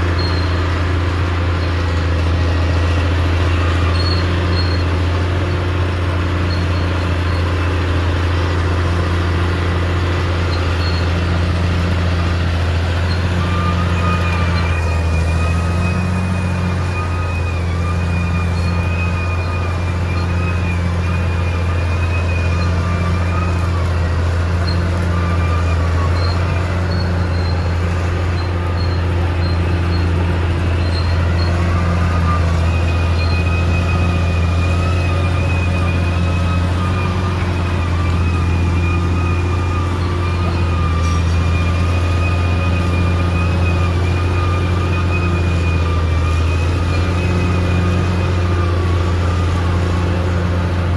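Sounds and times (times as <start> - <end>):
bulldozer engine drone: 0.0 - 50.9.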